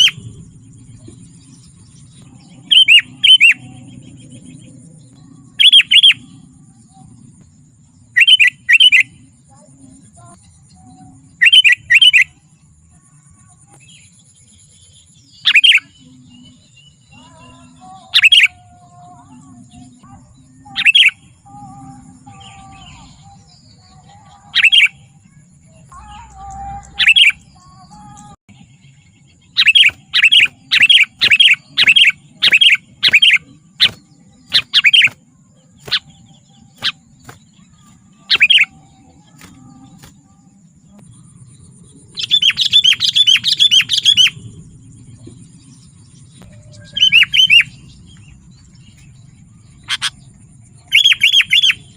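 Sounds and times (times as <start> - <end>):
bird calling in sharp notes: 5.5 - 6.3, 8.2 - 9.1, 25.9 - 28.2, 29.5 - 35.2, 35.8 - 40.1, 46.4 - 48.4, 49.7 - 51.9.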